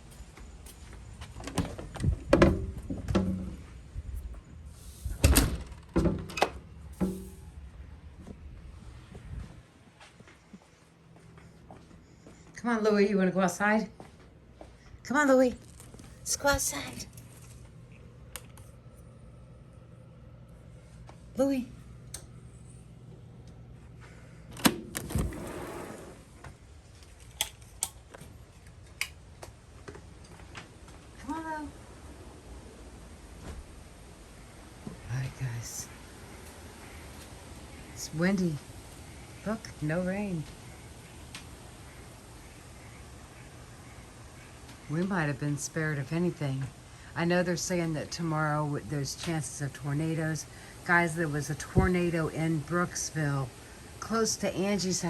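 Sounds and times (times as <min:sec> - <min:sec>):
door latch clunks and clicks: 0:24.5 - 0:25.4
door swishing: 0:24.8 - 0:26.3.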